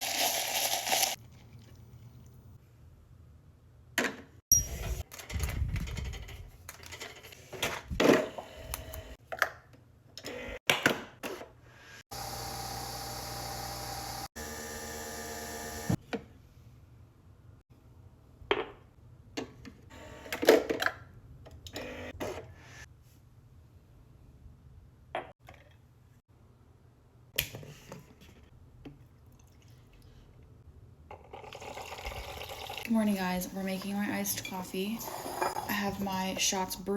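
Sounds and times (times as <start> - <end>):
small appliance motor humming: 12.1 - 16.0.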